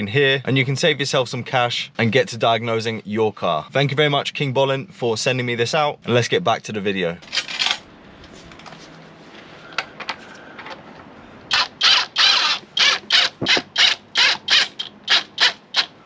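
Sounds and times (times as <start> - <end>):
ratchet wrench clicking: 11.5 - 15.9.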